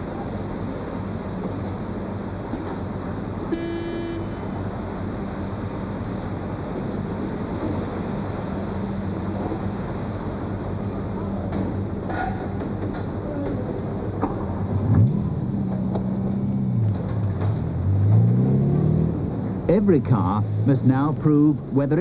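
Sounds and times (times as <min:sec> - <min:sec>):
short horn-like tone: 0:03.5 - 0:04.5.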